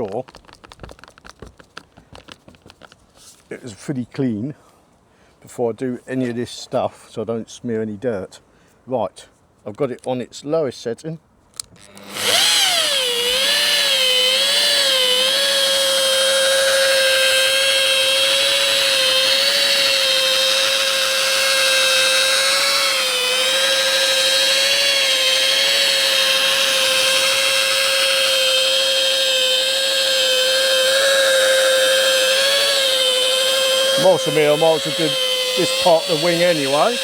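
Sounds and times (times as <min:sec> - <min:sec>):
rotary polisher whining: 0:11.8 - 0:37.0.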